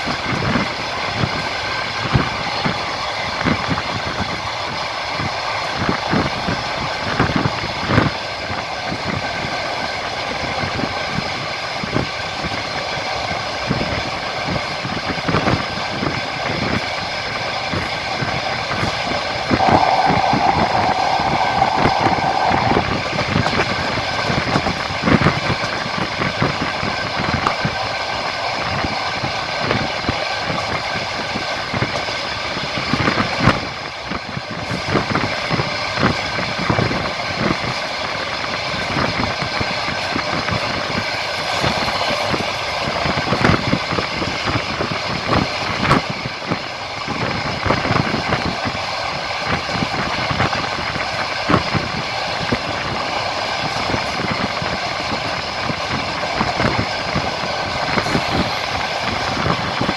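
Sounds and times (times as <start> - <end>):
train rumble and hum: 15.6 - 33.4, 34.6 - 59.9
loud steady tone: 18.9 - 23.9, 57.8 - 59.9.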